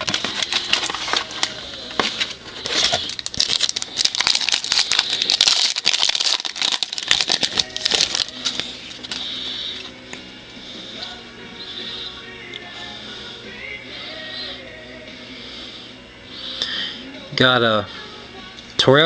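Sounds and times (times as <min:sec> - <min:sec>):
wrapper crinkling and tearing: 0:00.0 - 0:09.2.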